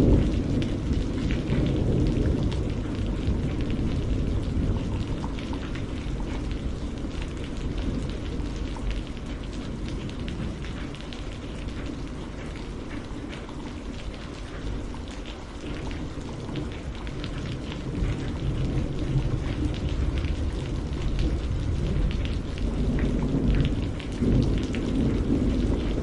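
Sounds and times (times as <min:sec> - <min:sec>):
steady rain: 0:00.0 - 0:26.0.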